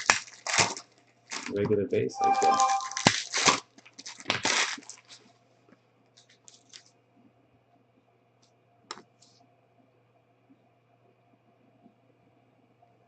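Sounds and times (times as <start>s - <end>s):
packaging tearing and crinkling: 0.0s - 1.6s, 2.4s - 5.3s, 6.2s - 6.9s.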